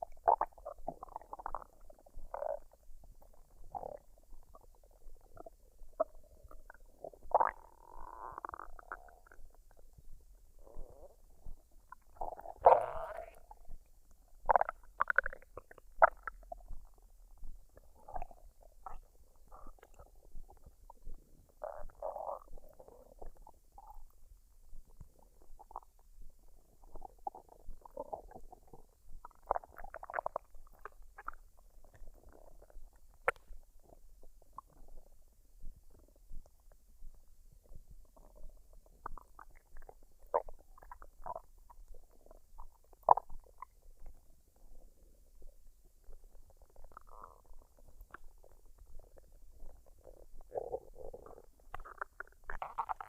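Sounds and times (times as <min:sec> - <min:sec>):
stomach gurgling: 0:00.0 - 0:53.0.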